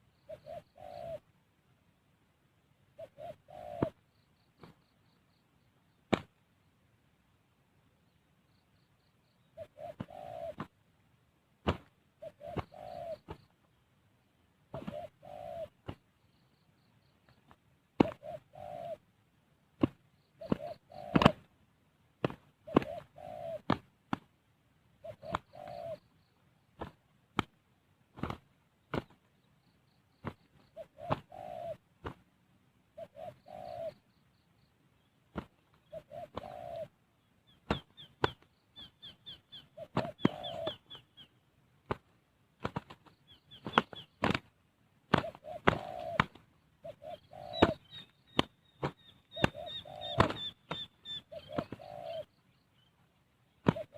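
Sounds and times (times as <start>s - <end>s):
dove cooing: 0.0s - 1.3s, 2.8s - 4.8s, 9.3s - 10.8s, 11.7s - 13.5s, 14.7s - 16.6s, 18.0s - 19.2s, 19.8s - 21.6s, 22.3s - 23.9s, 24.9s - 26.2s, 30.2s - 32.0s, 32.8s - 34.7s, 35.4s - 41.3s, 45.1s - 52.9s, 53.5s - 53.9s
birds flapping and knocking: 11.6s - 13.5s, 19.8s - 21.5s, 22.2s - 24.3s, 26.8s - 29.3s, 30.2s - 31.3s, 35.3s - 36.4s, 37.6s - 38.5s, 39.9s - 40.8s, 41.8s - 44.5s, 45.1s - 46.5s, 47.6s - 51.9s, 53.6s - 53.9s
small bird chirping twitter: 37.2s - 41.5s, 43.0s - 44.3s, 45.3s - 53.9s.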